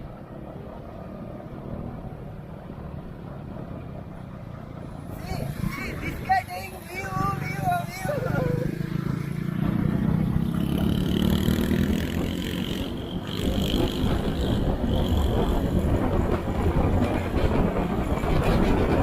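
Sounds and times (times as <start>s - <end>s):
motorbike rumble and rattle: 0.0s - 19.0s
wind noise on microphone: 5.1s - 11.0s, 11.6s - 19.0s.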